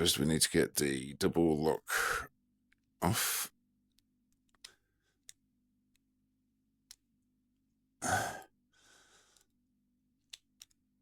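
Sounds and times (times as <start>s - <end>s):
person sighing: 8.0s - 8.5s.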